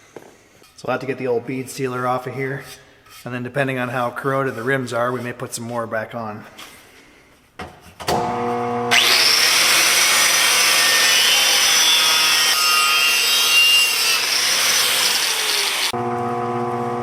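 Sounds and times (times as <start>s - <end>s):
power tool grinding on steel rim: 8.8s - 16.0s.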